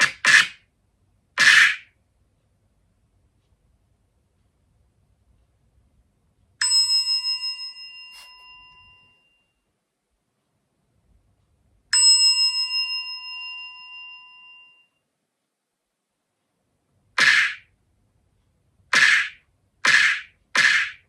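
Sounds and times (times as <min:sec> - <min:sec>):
small metal bell ringing: 0:06.6 - 0:09.6, 0:11.9 - 0:15.0.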